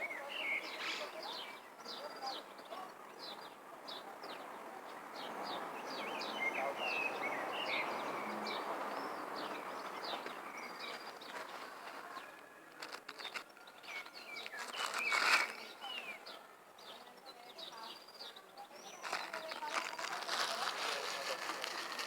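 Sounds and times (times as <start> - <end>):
birds chirping: 0.0 - 22.0
clicks and rustling: 10.2 - 15.5.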